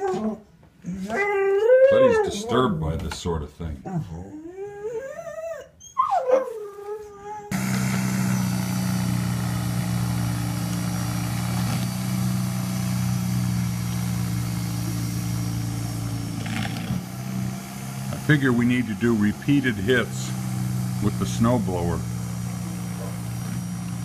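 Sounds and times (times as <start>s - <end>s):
dog howling and whining: 0.0s - 2.7s, 3.8s - 7.6s, 22.9s - 23.2s
snowblower engine running: 7.5s - 24.0s.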